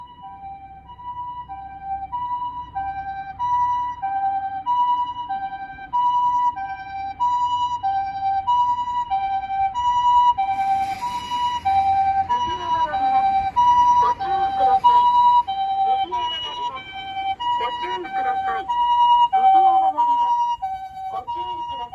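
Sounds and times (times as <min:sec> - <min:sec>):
two-tone ambulance siren: 0:00.0 - 0:21.9
road noise rushing: 0:09.8 - 0:21.9.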